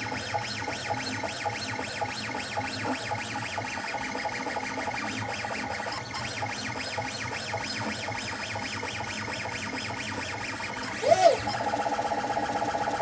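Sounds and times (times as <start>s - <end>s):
stepper motors whining: 10.9s - 11.7s.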